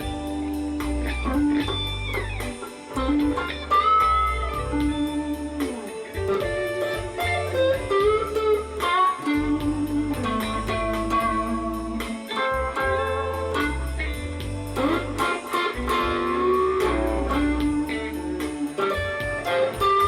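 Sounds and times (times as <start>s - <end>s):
bass: 0.0s - 20.0s
electric guitar blues lead: 0.0s - 20.0s
steady drum beat: 0.0s - 20.0s.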